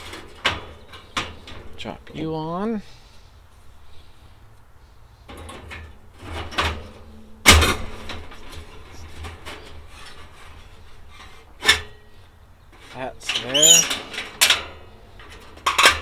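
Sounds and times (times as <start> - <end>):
loud metal clunk: 0.0 - 1.9, 5.3 - 16.0
metal scrapes and rattles: 0.0 - 2.3, 5.2 - 16.0.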